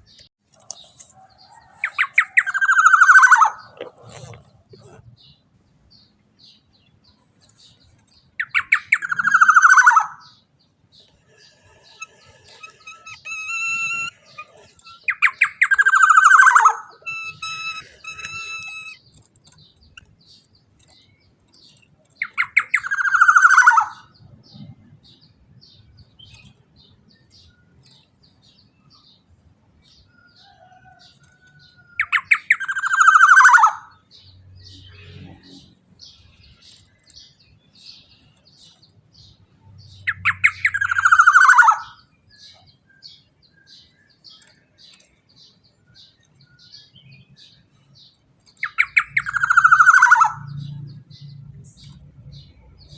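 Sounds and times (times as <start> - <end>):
bird giving harsh calls: 1.8 - 5.0, 8.4 - 10.4, 11.5 - 19.1, 22.2 - 24.1, 32.0 - 34.0, 40.1 - 42.1, 48.6 - 50.6.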